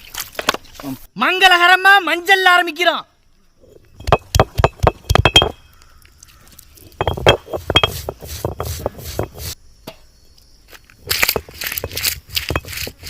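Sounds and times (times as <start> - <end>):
clinks and knocks of hard objects: 3.9 - 10.0, 11.1 - 13.0.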